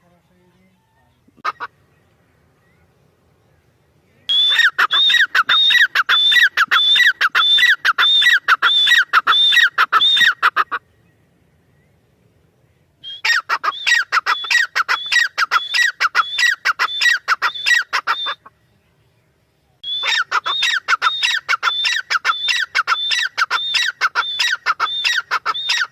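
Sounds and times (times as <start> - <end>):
francolin squawking calls: 4.3 - 11.2, 13.0 - 18.6, 19.8 - 25.9.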